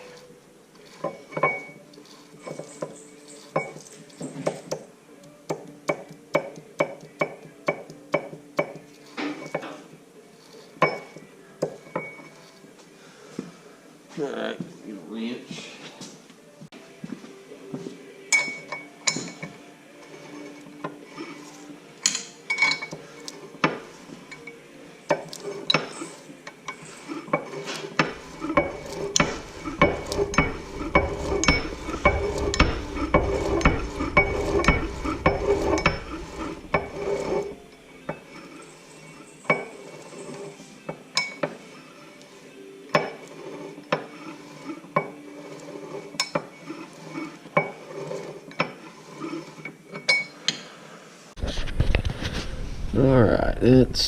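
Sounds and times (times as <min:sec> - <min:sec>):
metal tools clinking: 0:00.0 - 0:04.8, 0:18.3 - 0:19.6, 0:22.0 - 0:41.6, 0:49.7 - 0:50.5
gears clicking and grinding: 0:25.1 - 0:50.6.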